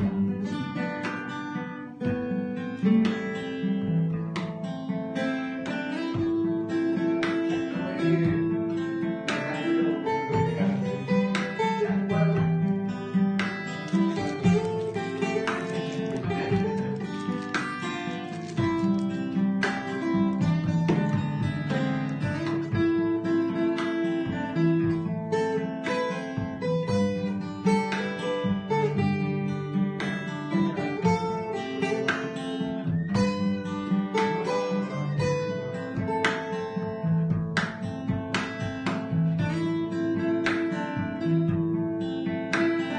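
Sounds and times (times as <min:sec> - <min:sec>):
acoustic guitar strumming: 0:00.0 - 0:42.9
bass line: 0:09.9 - 0:12.9.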